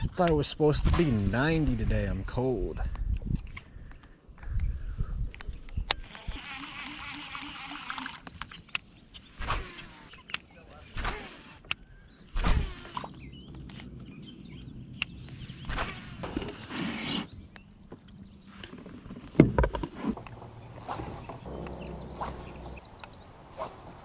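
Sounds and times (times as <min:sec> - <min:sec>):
small birds chirping faintly: 0:03.4 - 0:19.4, 0:20.0 - 0:24.0
steady low hum: 0:20.1 - 0:24.0.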